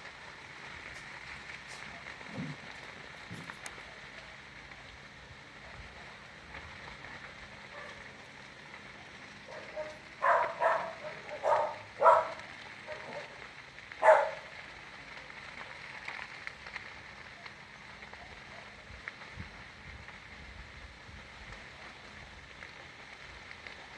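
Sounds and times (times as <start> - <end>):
dog barking: 7.7 - 8.1, 9.5 - 13.4, 14.0 - 14.6.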